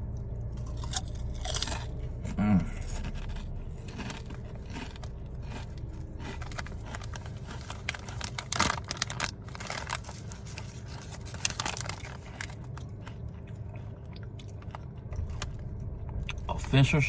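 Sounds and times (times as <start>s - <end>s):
chip bag crinkling: 2.8s - 13.6s.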